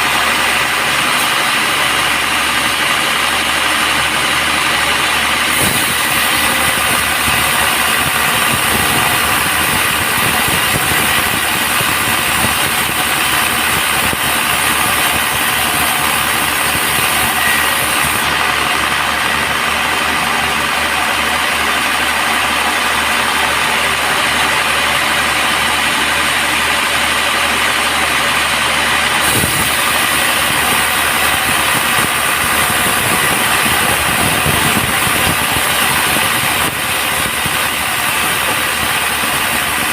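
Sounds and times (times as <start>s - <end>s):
band sawmill machine drone: 0.0s - 39.9s.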